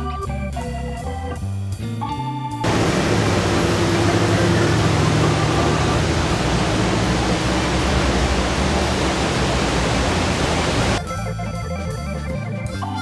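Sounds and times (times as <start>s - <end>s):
background music: 0.0s - 13.0s
waterfall roaring: 2.6s - 11.0s.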